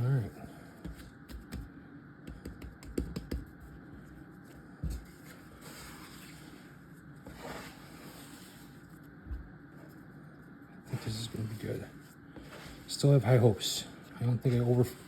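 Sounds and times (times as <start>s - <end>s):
dough squishing: 0.1s - 10.1s, 10.9s - 15.0s
dough thumping on a surface: 0.8s - 3.6s.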